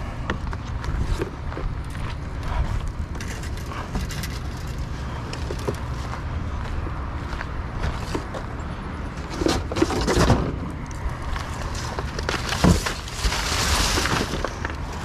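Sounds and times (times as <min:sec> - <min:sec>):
low steady rumble: 0:00.0 - 0:15.0
scrap metal rattling and clattering: 0:03.1 - 0:05.8, 0:09.2 - 0:10.7, 0:11.6 - 0:15.0.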